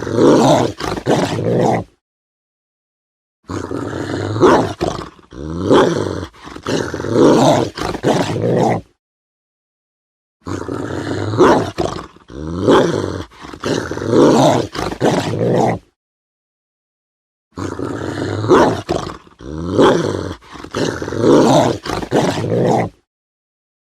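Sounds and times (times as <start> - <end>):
large dog growling: 0.0 - 2.0, 3.5 - 9.0, 10.4 - 16.0, 17.6 - 23.1.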